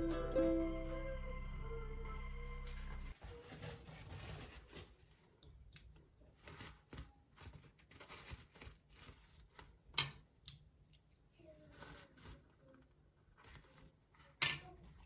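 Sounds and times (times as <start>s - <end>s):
small objects rustling: 2.6s - 9.9s.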